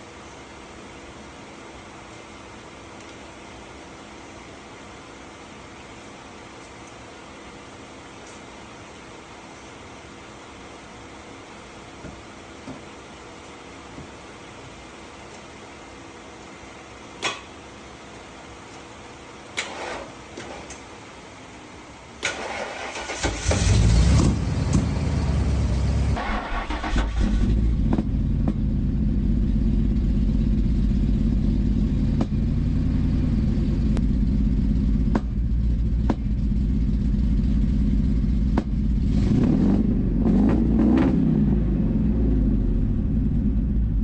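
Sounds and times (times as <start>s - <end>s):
car engine starting and idling: 22.2s - 44.0s.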